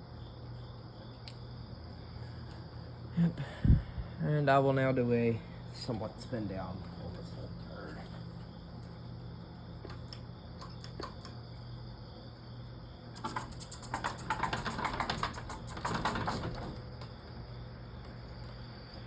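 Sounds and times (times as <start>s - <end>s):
steady low hum: 0.0s - 14.3s
ceiling fan spinning down: 0.9s - 19.0s
rapid even clicking: 13.2s - 17.1s.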